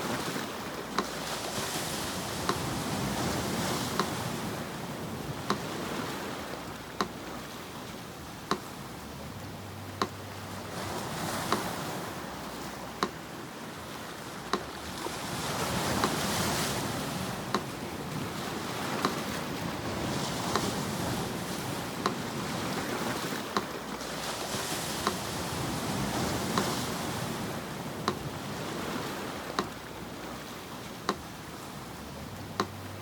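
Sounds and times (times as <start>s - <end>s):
sea surf washing in: 0.0s - 33.0s
metronome ticking: 3.4s - 4.3s, 6.6s - 7.4s, 8.4s - 10.8s, 11.4s - 13.3s, 17.5s - 17.8s, 28.0s - 28.3s, 32.5s - 33.0s.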